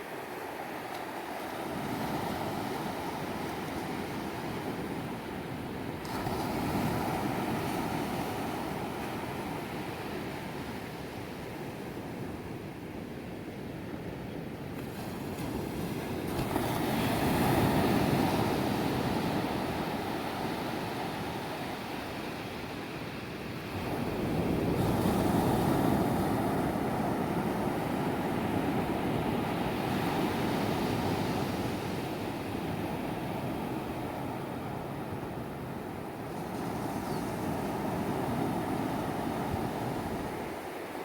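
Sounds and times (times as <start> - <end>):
ocean surf breaking on beach: 14.8 - 41.0.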